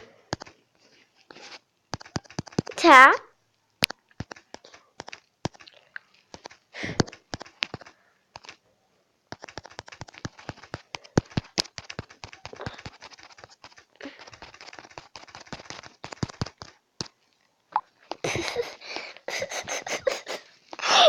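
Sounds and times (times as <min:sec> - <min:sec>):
tapping on phone touchscreen: 0:01.9 - 0:02.8, 0:09.3 - 0:17.1.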